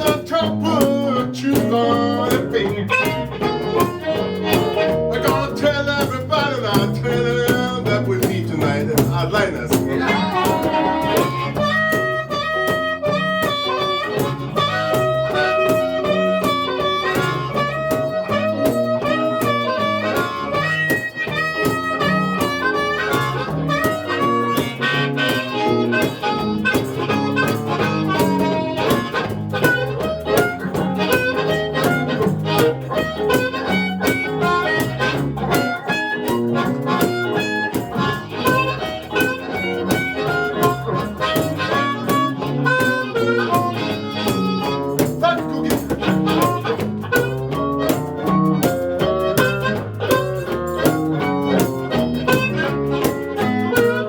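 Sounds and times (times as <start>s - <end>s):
harmonica playing: 0.0s - 54.0s
rhythmic guitar: 0.0s - 54.0s.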